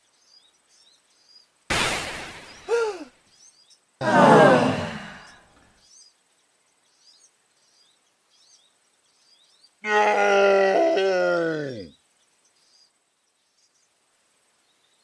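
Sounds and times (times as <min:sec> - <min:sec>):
small bird chirping: 0:00.0 - 0:01.6, 0:02.2 - 0:04.0, 0:05.2 - 0:09.8, 0:11.8 - 0:15.0.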